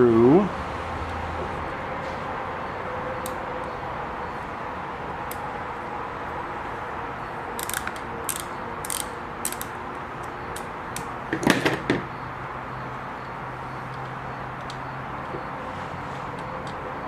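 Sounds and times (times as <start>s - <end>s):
screwdriver clicks and scrapes: 7.6s - 11.1s.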